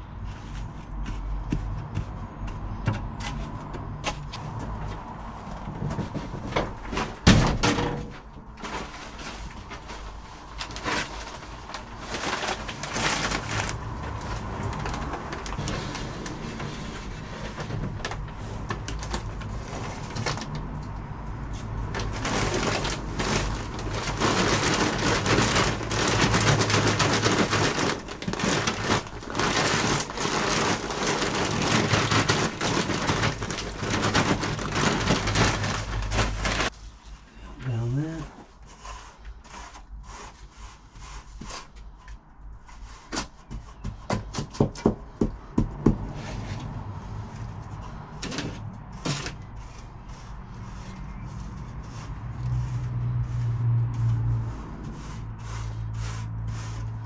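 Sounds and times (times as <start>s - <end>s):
scraping and rustling: 0.0s - 37.3s, 37.9s - 44.5s, 46.0s - 57.0s
sand pouring from a bag: 21.9s - 36.8s.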